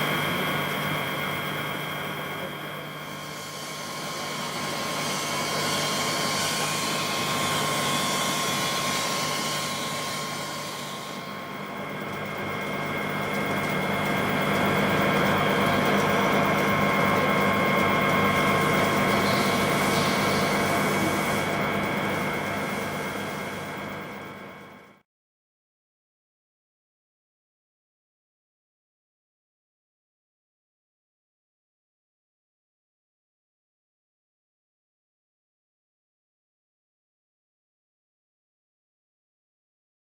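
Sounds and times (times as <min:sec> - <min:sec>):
milling machine running: 0:00.0 - 0:24.9.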